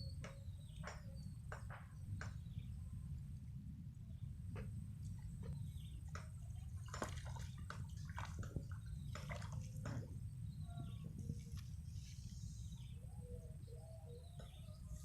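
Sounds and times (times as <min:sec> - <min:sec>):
water splashes and drips: 0:04.6 - 0:10.2.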